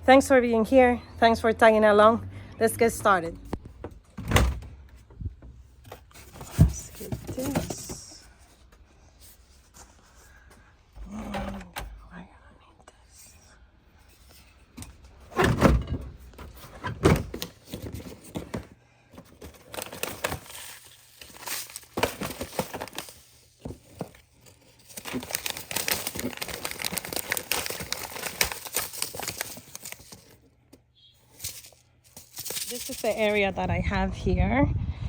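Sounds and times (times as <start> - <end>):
crinkling and rustling: 3.5 - 11.8, 14.0 - 33.5.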